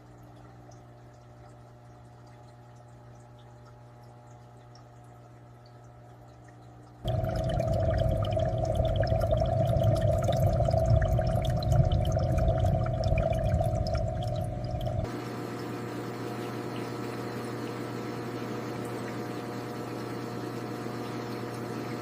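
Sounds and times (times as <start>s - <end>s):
running water splashing and dripping: 0.0s - 15.1s.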